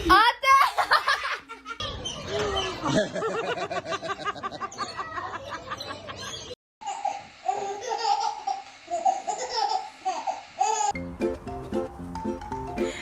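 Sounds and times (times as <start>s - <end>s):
bursts of laughter: 0.6s - 6.6s.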